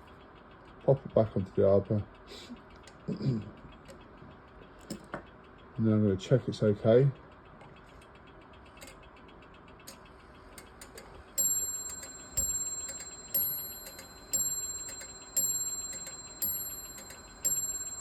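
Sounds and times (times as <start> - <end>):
faint clock ticks and clicks: 0.0 - 18.0
mantel clock striking: 10.8 - 18.0.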